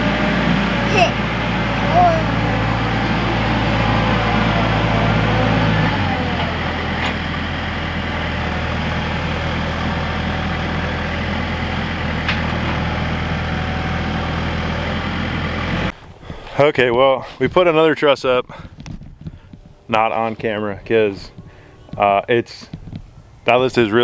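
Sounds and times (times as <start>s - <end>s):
heavy machinery engine running: 0.0s - 16.0s.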